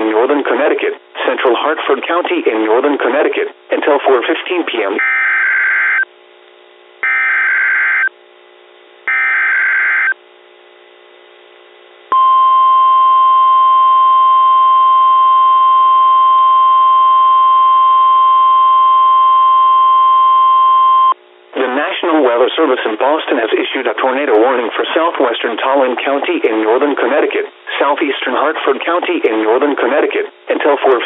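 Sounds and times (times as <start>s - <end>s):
steady warning alarm tone: 5.0s - 6.1s, 7.0s - 8.1s, 9.1s - 10.2s.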